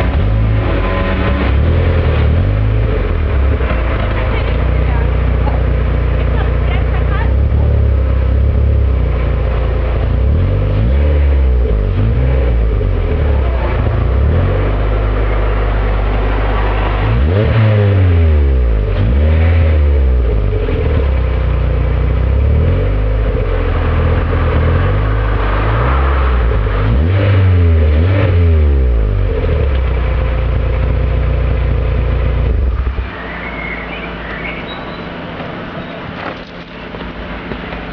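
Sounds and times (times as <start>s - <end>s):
car engine idling: 0.0s - 37.9s
car engine revving: 0.0s - 37.9s.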